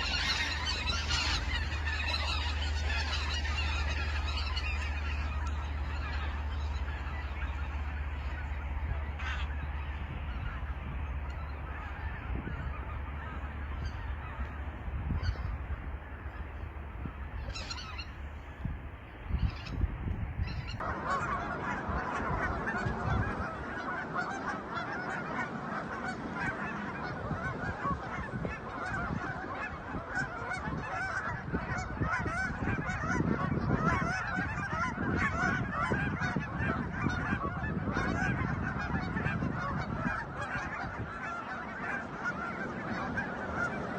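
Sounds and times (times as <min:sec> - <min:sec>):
low steady hum: 0:00.0 - 0:23.8
geese honking: 0:00.0 - 0:43.9.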